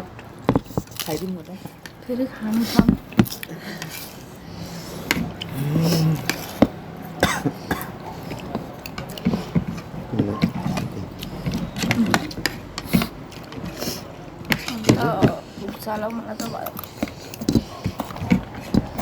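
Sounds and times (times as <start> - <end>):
spoons clicking on plates: 5.0 - 19.0
person coughing: 7.2 - 8.0.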